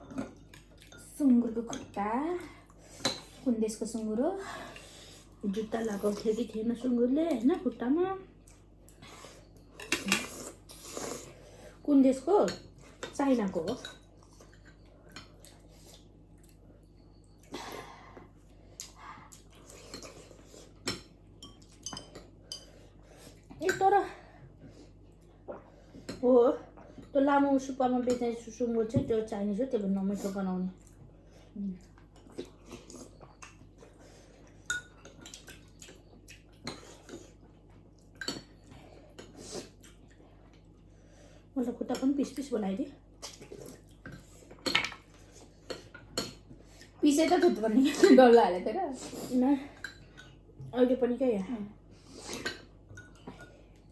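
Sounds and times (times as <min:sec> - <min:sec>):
utensils clinking against dishes: 0:09.4 - 0:15.4, 0:19.7 - 0:22.8.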